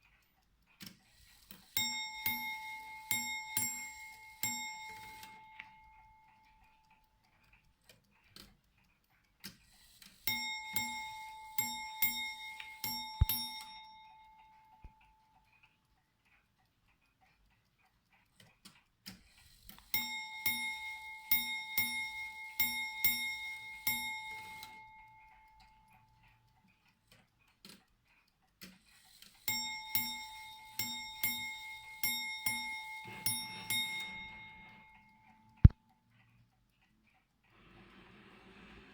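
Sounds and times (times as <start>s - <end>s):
clock click: 0.0s - 38.9s
faint clock ticking: 0.0s - 38.9s
bell strokes: 29.5s - 35.7s.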